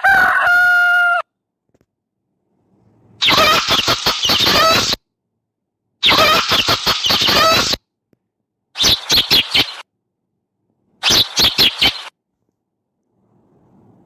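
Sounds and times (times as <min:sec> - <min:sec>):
bird calls: 0:03.2 - 0:05.0, 0:06.0 - 0:07.8, 0:08.8 - 0:09.8, 0:11.0 - 0:12.1.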